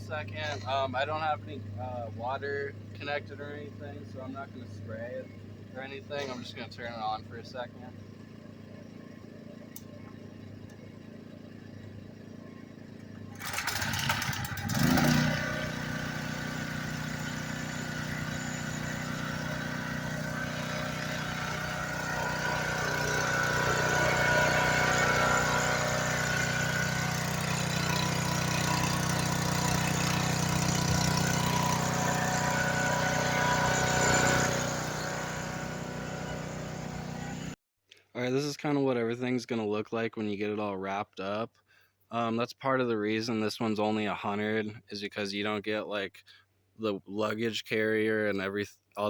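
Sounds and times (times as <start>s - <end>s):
electric pressure washer running: 11.2s - 37.6s.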